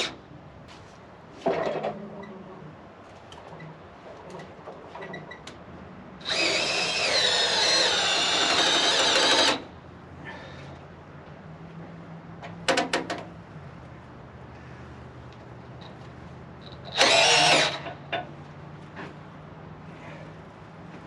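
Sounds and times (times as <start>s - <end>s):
hydraulic pump whining: 6.2s - 9.7s, 16.7s - 18.2s.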